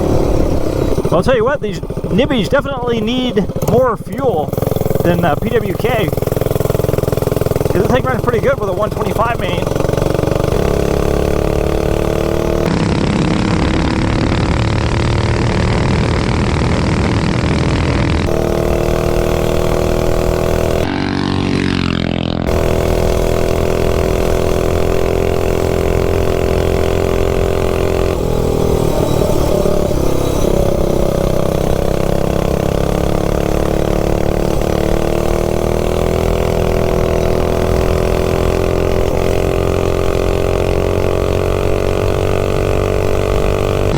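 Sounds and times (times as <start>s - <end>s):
minibike engine running hard: 0.0s - 43.9s.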